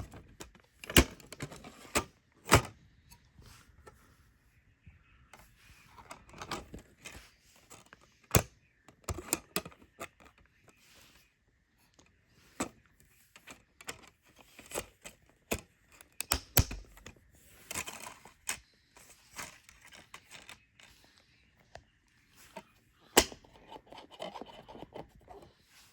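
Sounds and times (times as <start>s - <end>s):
plastic cases clicking and snapping: 0.0s - 2.8s, 13.4s - 18.6s, 23.2s - 25.4s.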